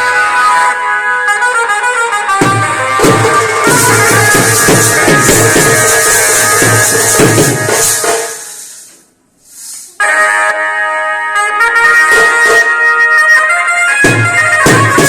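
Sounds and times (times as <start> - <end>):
wedding band music: 0.0 - 9.0, 9.9 - 15.0
fast drum beat: 2.4 - 8.5.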